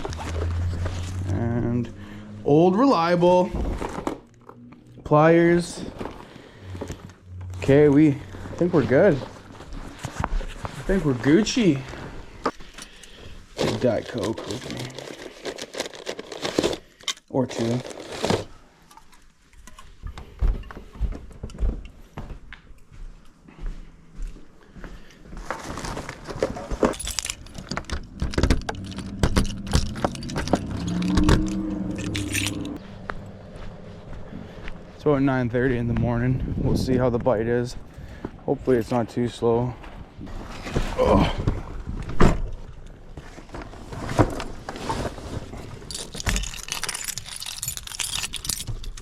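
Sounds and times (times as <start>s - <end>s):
keys jangling: 26.9s - 32.8s, 45.8s - 49.0s
car engine running: 27.0s - 34.8s.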